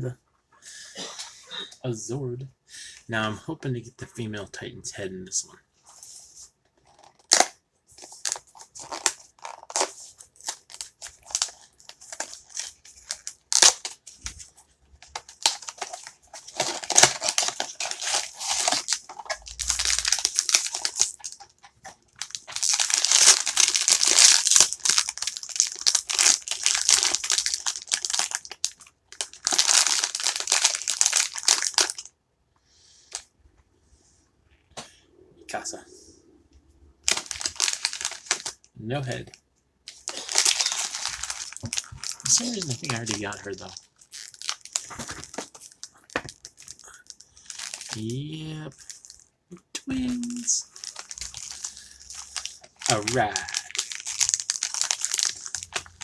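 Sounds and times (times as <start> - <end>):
packaging crinkling and rustling: 6.8 - 32.1, 37.0 - 38.6, 39.2 - 49.3, 50.1 - 56.0
packaging being torn: 6.9 - 14.2, 15.1 - 21.5, 22.2 - 32.1, 37.1 - 38.6, 39.9 - 49.2, 50.1 - 56.0.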